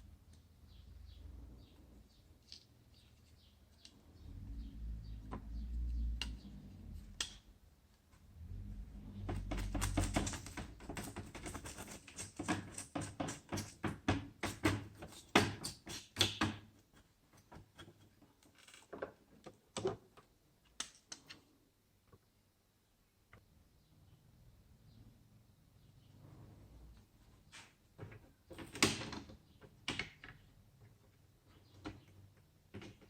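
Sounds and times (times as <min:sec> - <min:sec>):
laptop clicking and tapping: 0:09.2 - 0:16.7.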